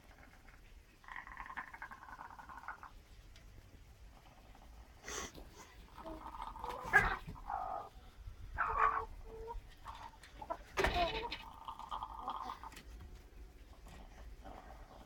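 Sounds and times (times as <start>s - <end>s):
chicken snoring: 0.0s - 3.0s, 4.1s - 8.0s, 11.2s - 12.8s, 13.8s - 15.0s.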